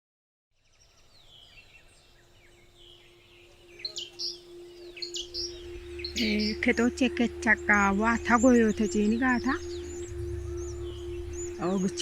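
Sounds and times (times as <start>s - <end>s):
birds whistling and chirping: 0.6s - 12.0s
steady low hum: 2.7s - 12.0s.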